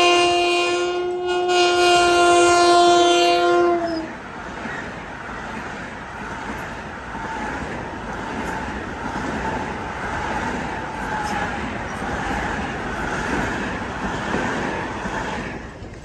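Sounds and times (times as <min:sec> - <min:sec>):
train wheels rumbling on rail: 0:00.0 - 0:16.0.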